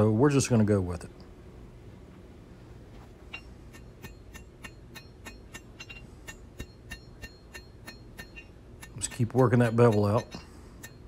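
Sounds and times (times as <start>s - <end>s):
hammer blows on metal: 3.3s - 11.0s.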